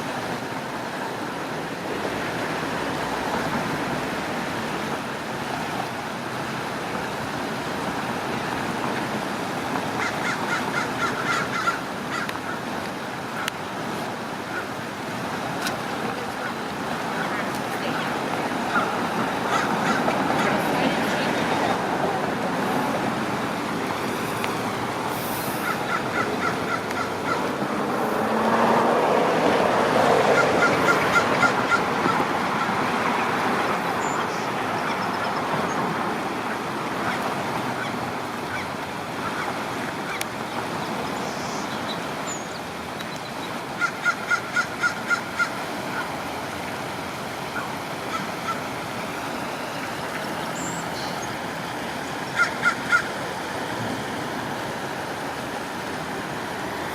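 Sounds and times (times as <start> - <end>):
ducks calling: 10.0 - 12.7, 16.4 - 40.5, 43.7 - 46.1, 47.5 - 51.4, 52.2 - 53.2
steady rushing noise: 12.3 - 40.8.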